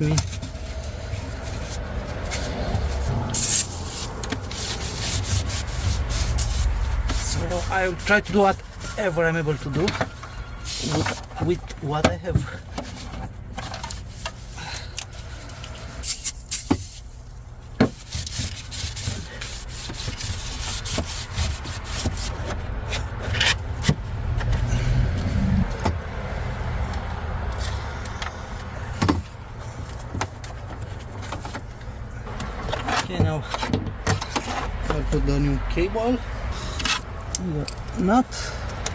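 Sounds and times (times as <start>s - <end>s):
hand scrubbing: 0.4s - 11.6s.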